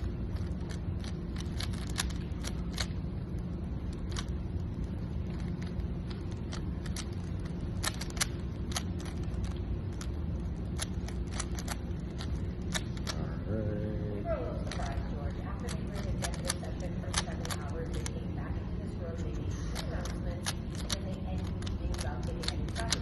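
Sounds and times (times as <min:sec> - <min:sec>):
puzzle cube twisting clicks: 0:00.0 - 0:03.0, 0:03.9 - 0:13.2, 0:15.6 - 0:18.2, 0:19.7 - 0:23.0
steady low hum: 0:00.0 - 0:23.0.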